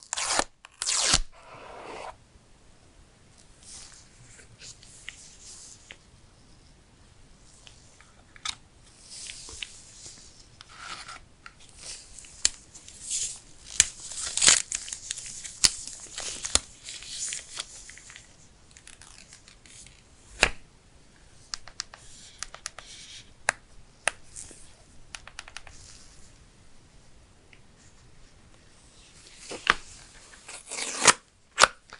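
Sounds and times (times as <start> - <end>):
paper packaging tearing: 0.0 - 1.5, 30.5 - 31.7.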